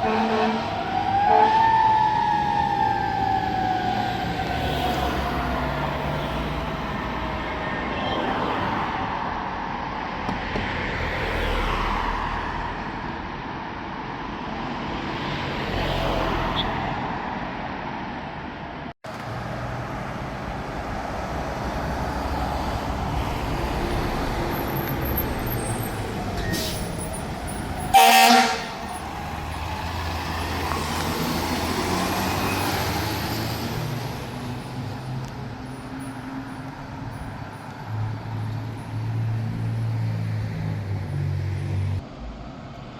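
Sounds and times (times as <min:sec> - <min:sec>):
loud horn blast: 0:00.0 - 0:01.6, 0:27.8 - 0:29.1
fire truck engines running: 0:19.1 - 0:39.9.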